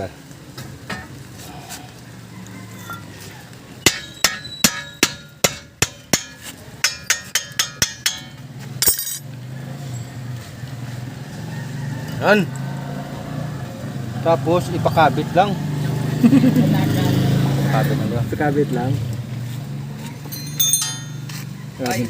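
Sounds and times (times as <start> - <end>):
hammer striking metal: 3.8 - 9.3, 20.4 - 21.5.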